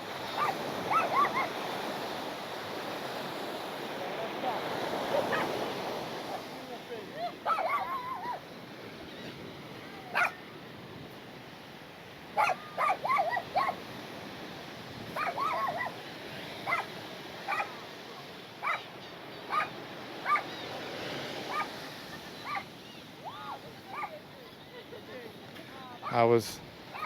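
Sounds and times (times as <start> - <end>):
dog barking and yipping: 0.3 - 1.6, 5.1 - 5.6, 7.2 - 8.4, 10.1 - 10.4, 12.4 - 13.8, 15.1 - 16.0, 16.6 - 17.8, 18.6 - 18.9, 19.5 - 20.5, 21.5 - 21.8, 22.4 - 22.7, 23.9 - 24.2.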